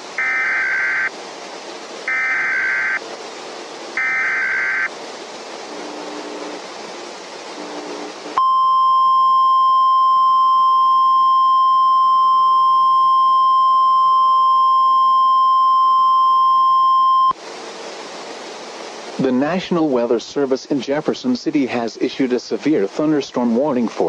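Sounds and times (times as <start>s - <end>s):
loud steady high alarm tone: 0.1s - 1.1s, 2.1s - 3.0s, 4.0s - 4.9s
hiss: 17.4s - 21.2s.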